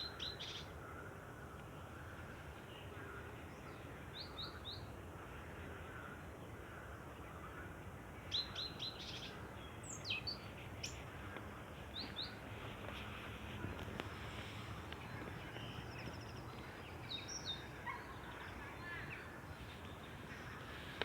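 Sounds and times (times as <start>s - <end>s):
faint background noise: 0.0s - 21.0s
small birds chirping: 8.4s - 21.0s.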